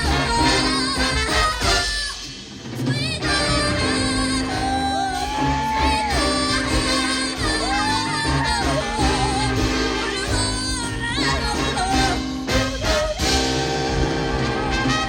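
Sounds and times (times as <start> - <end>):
jazz big band ballad: 0.0 - 15.0.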